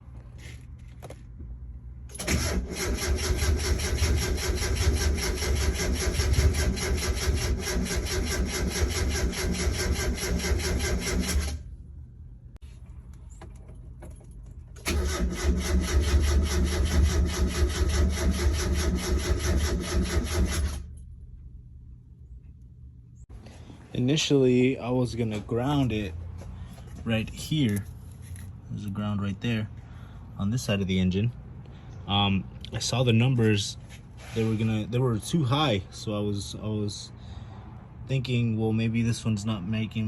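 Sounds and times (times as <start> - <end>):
starter motor cranking engine: 2.1 - 11.7, 14.8 - 20.9.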